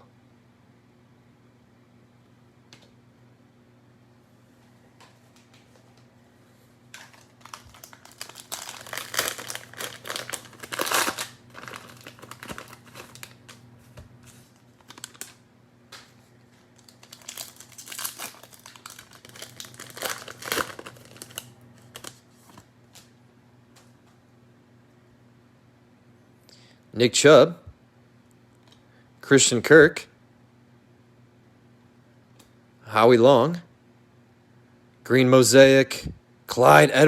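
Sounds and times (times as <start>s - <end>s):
plastic wrapper tearing and crinkling: 6.9s - 15.4s, 16.0s - 23.1s.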